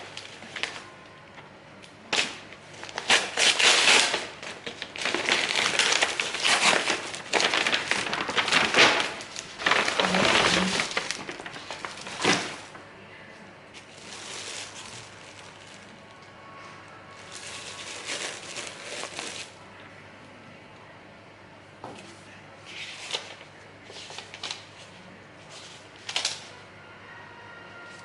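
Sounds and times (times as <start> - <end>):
packaging crinkling and rustling: 0.0 - 0.9, 2.1 - 12.9, 13.7 - 16.2, 17.2 - 19.6, 22.7 - 24.9, 25.5 - 26.5.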